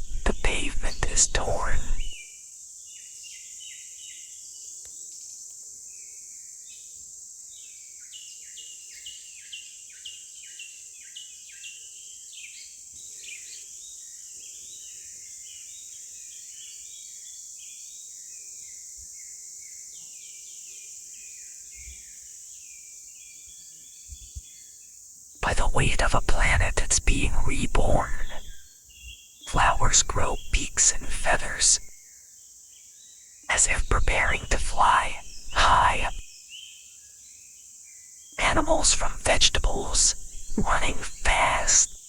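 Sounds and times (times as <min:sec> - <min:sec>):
small birds chirping: 0:00.0 - 0:02.2, 0:25.5 - 0:32.0.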